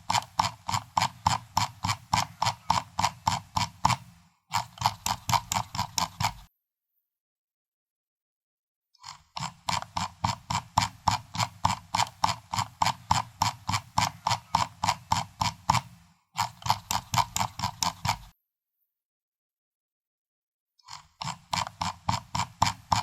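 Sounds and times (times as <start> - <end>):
mouse scroll wheel clicking: 0.0 - 6.5, 9.0 - 18.4, 20.9 - 23.0.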